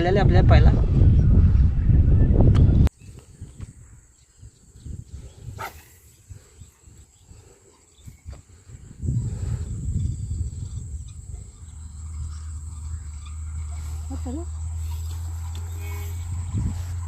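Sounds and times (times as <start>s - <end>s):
low rumble: 0.0s - 2.9s
wind rumble on microphone: 0.0s - 17.0s
high-pitched insect drone: 9.0s - 17.0s.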